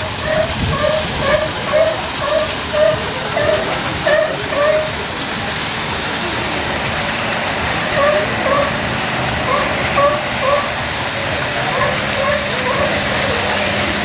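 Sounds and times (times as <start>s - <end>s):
sea lion barking: 0.0s - 5.0s, 7.8s - 8.8s, 9.4s - 10.8s, 11.7s - 14.0s
background noise wash: 0.0s - 14.0s.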